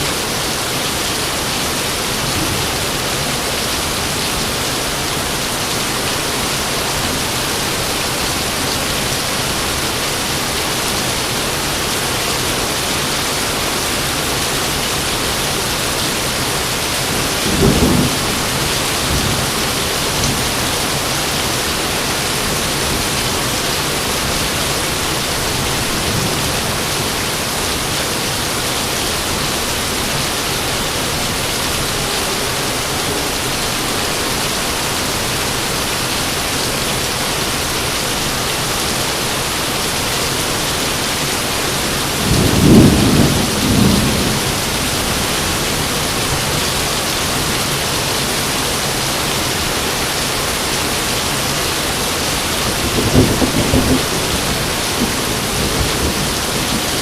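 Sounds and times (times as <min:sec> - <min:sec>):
heavy rain: 0:00.0 - 0:57.0
thunder rumbling: 0:17.0 - 0:21.0, 0:41.8 - 0:46.8, 0:52.7 - 0:57.0.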